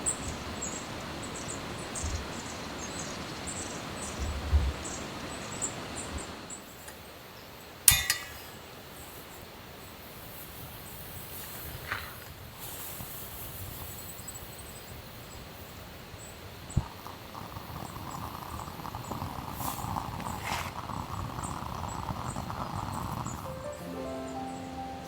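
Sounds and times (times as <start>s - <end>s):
sharp clink with ring: 7.9s - 8.6s
steady hiss: 10.0s - 25.0s.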